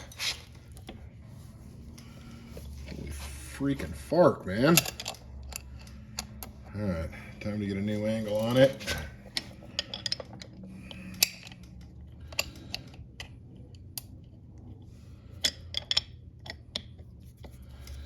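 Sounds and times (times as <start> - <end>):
tools clicking and clacking: 4.5 - 6.7, 7.8 - 14.5.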